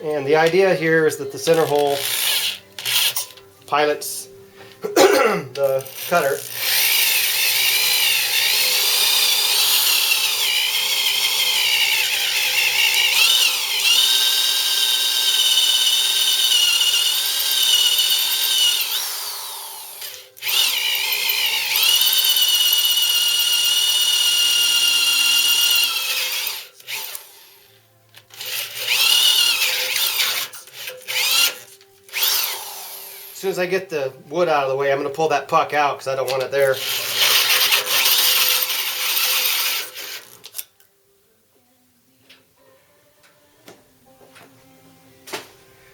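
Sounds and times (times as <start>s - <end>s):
hole saw grinding into metal: 0.4s - 3.5s, 5.6s - 33.2s, 36.2s - 40.7s.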